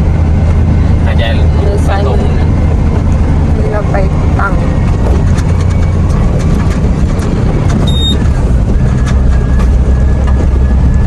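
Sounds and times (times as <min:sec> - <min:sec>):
truck engine and road drone: 0:00.0 - 0:11.0
short high beep: 0:07.8 - 0:08.2.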